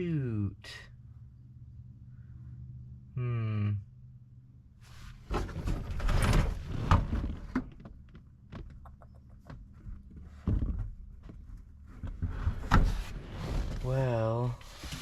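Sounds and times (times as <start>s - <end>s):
rustling: 9.7s - 15.0s.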